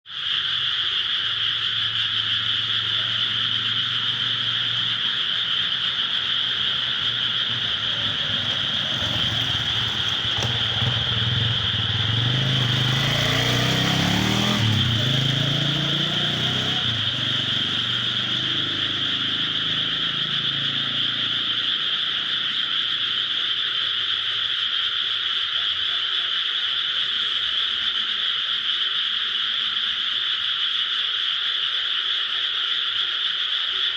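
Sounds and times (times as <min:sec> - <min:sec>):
frogs chorus: 0:00.1 - 0:33.9
vehicle passing rumble: 0:02.2 - 0:23.4.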